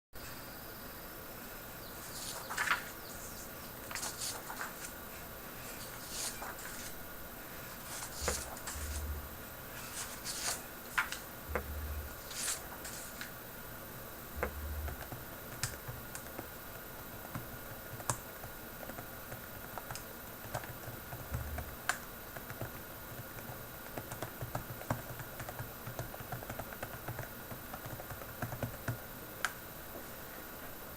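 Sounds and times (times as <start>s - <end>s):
faint high whine: 0.2s - 17.4s.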